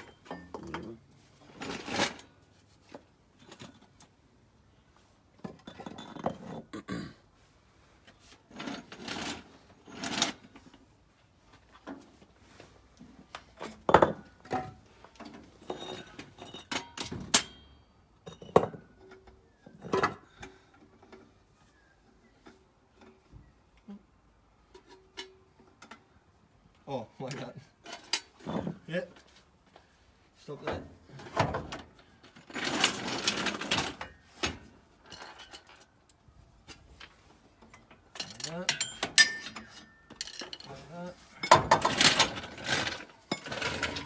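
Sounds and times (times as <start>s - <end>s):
tools and parts clinking: 0.0s - 4.2s, 5.4s - 6.7s, 13.3s - 21.4s, 27.7s - 29.3s, 30.6s - 44.0s.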